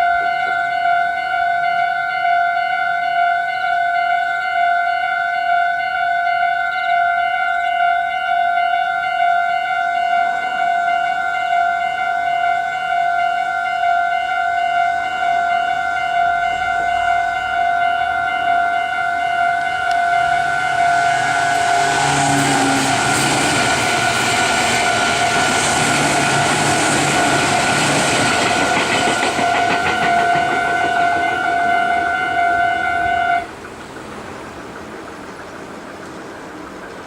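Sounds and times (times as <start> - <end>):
level-crossing warning bells: 0.0 - 36.9
electric train passing: 10.2 - 37.0
train wheels clacking: 19.9 - 36.7.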